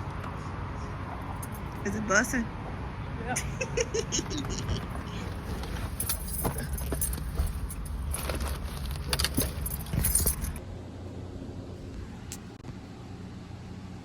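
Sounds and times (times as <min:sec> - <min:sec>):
low car rumble: 0:00.0 - 0:14.0
keys jangling: 0:05.2 - 0:10.6.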